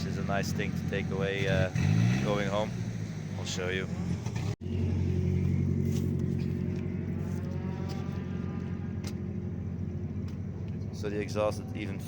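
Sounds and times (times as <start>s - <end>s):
distant car revving: 0.0s - 12.0s
car engine idling: 2.4s - 12.0s.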